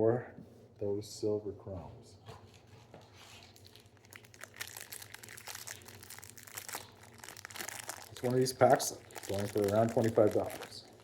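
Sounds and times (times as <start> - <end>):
plastic wrapper crinkling: 3.4 - 11.0
wrapper tearing: 3.5 - 11.0.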